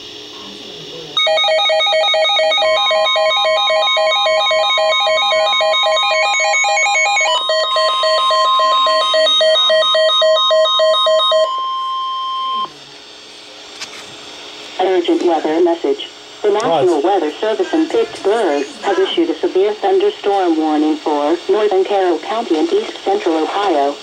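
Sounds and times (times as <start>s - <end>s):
rapid alternating alarm beeps: 1.2s - 12.7s
steady warning alarm tone: 1.2s - 12.8s.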